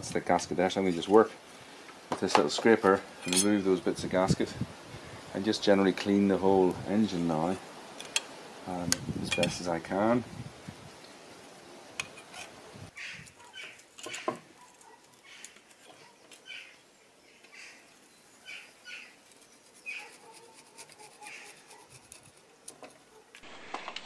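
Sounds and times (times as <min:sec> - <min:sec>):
hand scraper scraping metal: 0:19.2 - 0:23.0.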